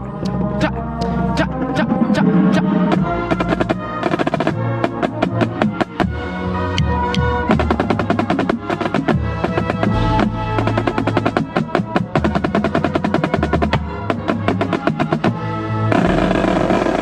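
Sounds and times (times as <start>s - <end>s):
lower drums of drumline: 1.7s - 17.0s
marching snare drum rolls: 6.8s - 15.3s.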